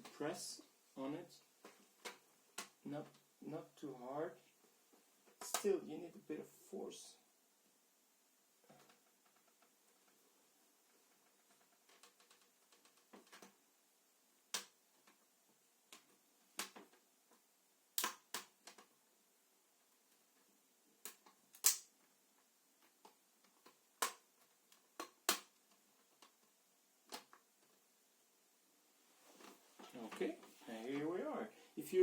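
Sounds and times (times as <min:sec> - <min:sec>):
plastic clips snapping: 0:18.0 - 0:18.9, 0:21.0 - 0:21.9, 0:23.4 - 0:26.4.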